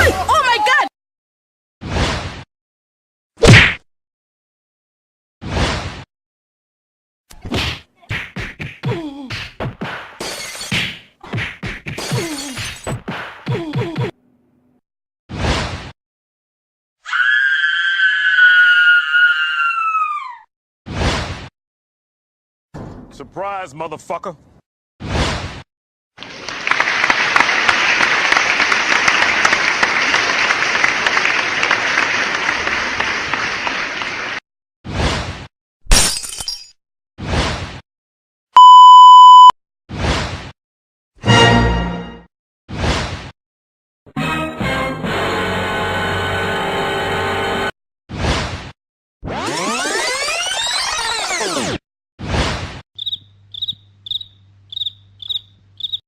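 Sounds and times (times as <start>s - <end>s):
crowd applause: 26.2s - 34.4s.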